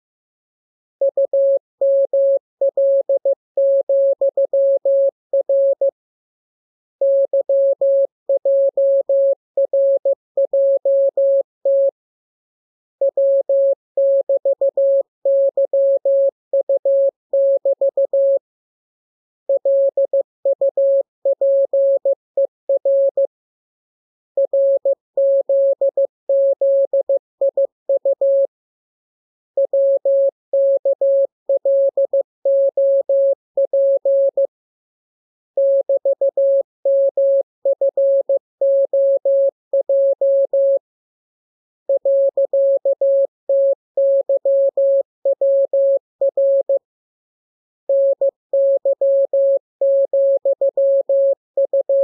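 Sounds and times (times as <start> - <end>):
morse code tone: 41.9 - 46.8, 47.9 - 52.0.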